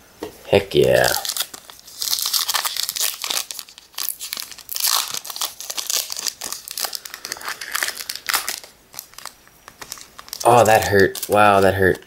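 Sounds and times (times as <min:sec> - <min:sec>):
wrapper crinkling and tearing: 0:00.8 - 0:12.0.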